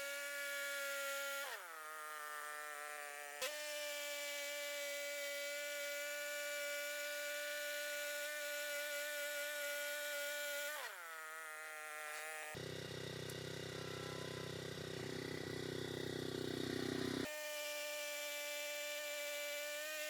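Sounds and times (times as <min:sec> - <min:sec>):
bandsaw mill cutting log: 0:00.0 - 0:20.0
engine idling: 0:12.6 - 0:17.3.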